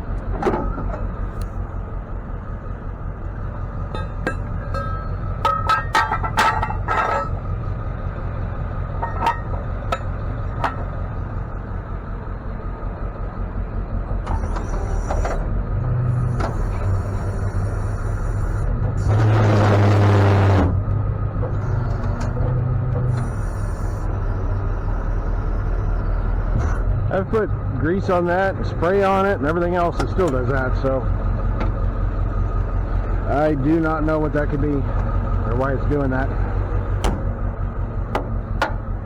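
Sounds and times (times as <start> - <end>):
truck engine idling: 0.0 - 39.0
loud rasping mechanical groan: 14.1 - 39.0
high mechanical squeaks: 14.3 - 15.4.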